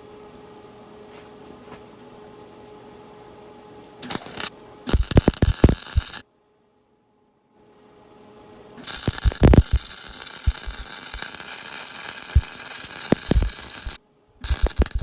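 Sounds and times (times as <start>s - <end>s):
arc welding crackling hiss: 4.0s - 6.2s, 8.8s - 15.0s.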